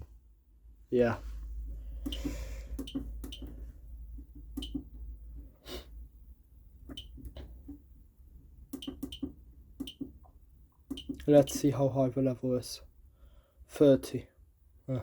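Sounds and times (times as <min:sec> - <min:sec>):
keypad button clicks: 0:04.6 - 0:04.9.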